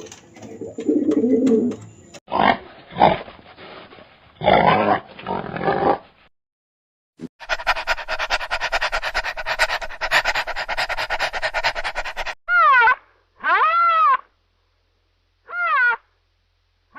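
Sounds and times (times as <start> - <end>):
rapid rasping animal pulses: 7.3 - 12.4.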